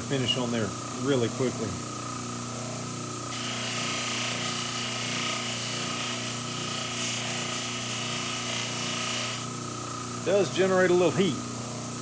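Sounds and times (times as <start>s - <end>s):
metal polished on abrasive wheel: 3.3s - 9.6s
motor humming: 3.3s - 10.3s.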